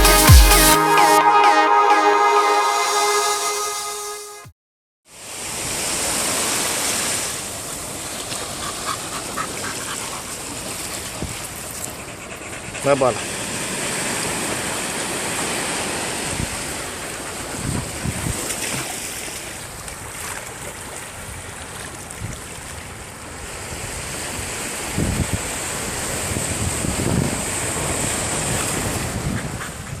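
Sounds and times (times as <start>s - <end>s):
wind buffeting microphone: 16.2s - 18.6s, 23.7s - 30.0s.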